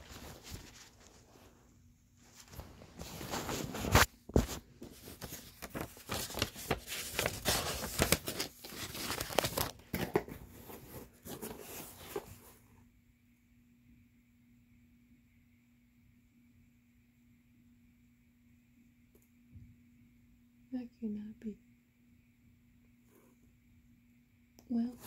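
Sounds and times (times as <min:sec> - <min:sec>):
rustling and crinkling: 0:00.0 - 0:12.7.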